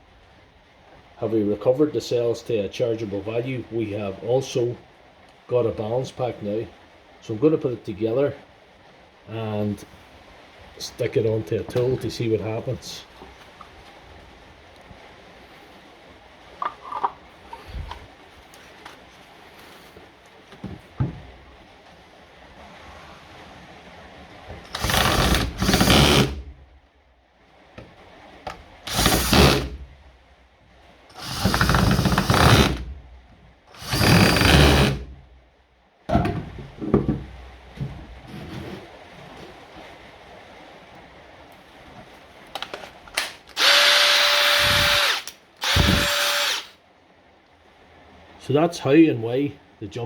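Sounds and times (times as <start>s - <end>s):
cordless drill running: 24.7s - 26.4s, 28.9s - 29.7s, 31.2s - 32.8s, 33.8s - 35.1s, 43.5s - 46.8s
drill clicks: 24.7s - 26.4s, 28.9s - 29.7s, 31.2s - 32.8s, 33.8s - 35.0s, 43.2s - 46.7s.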